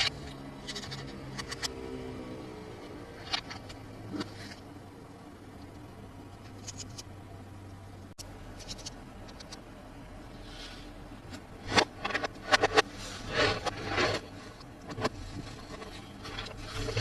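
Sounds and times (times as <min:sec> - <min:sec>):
plastic packaging ticks and scratches: 0:00.0 - 0:01.8.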